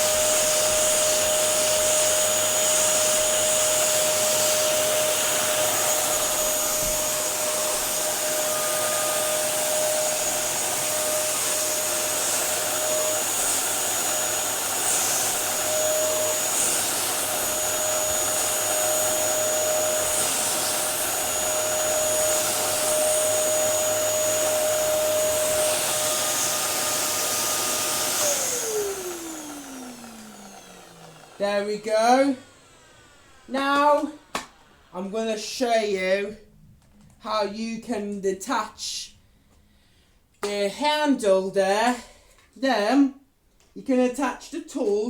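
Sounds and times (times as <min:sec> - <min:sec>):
vacuum motor spinning down: 0:00.0 - 0:34.9
vacuum cleaner running: 0:00.0 - 0:36.4.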